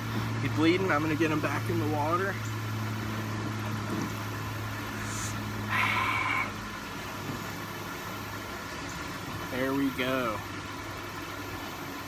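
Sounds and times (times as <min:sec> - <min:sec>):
low motor hum: 0:00.0 - 0:12.0.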